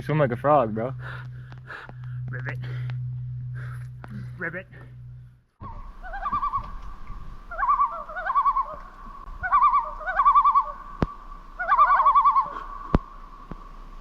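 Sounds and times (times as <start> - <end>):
loon tremolo calls: 5.6 - 14.0.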